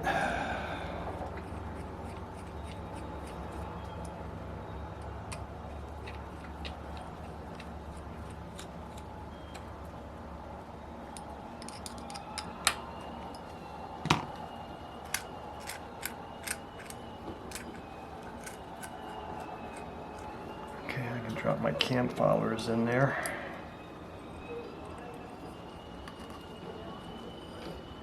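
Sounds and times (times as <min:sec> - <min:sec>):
small metal parts clicking: 0:11.1 - 0:13.5, 0:15.0 - 0:20.3.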